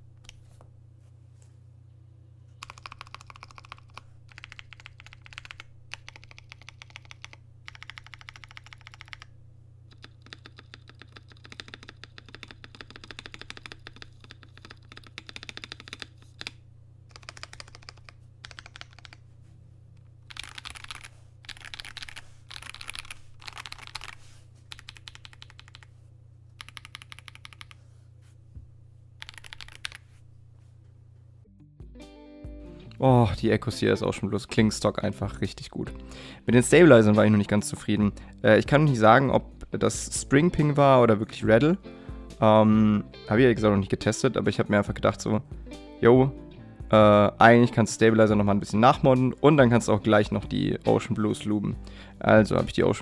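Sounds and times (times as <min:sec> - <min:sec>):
mechanical keyboard typing: 0:02.6 - 0:09.3, 0:09.9 - 0:19.2, 0:20.3 - 0:25.9, 0:26.6 - 0:27.8, 0:29.2 - 0:30.0.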